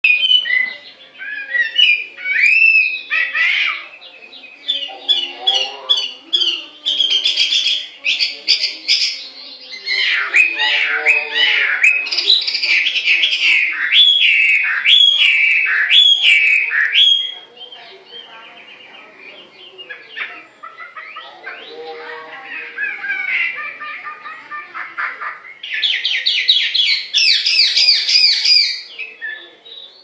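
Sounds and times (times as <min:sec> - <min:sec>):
bird singing whistled song: 0:00.0 - 0:03.1, 0:13.6 - 0:17.4.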